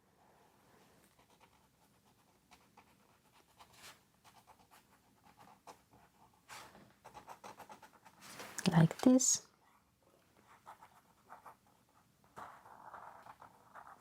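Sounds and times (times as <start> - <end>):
pen scratching on paper: 7.0 - 8.2, 10.5 - 14.0.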